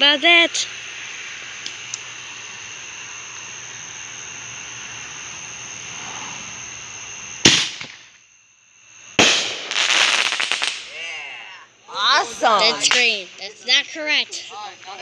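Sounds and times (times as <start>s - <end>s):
high-pitched background drone: 0.0s - 8.2s, 8.9s - 15.0s
firework bang: 7.4s - 8.2s, 9.2s - 11.0s.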